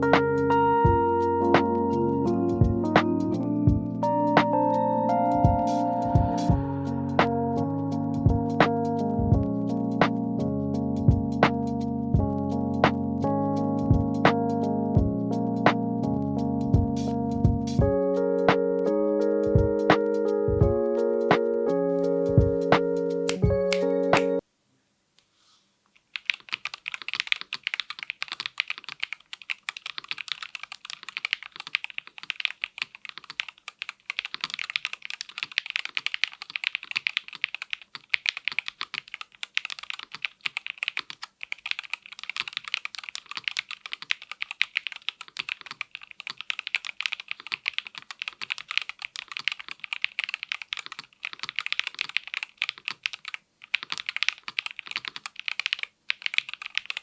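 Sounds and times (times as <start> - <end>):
fast keyboard typing clicks: 26.1 - 57.0.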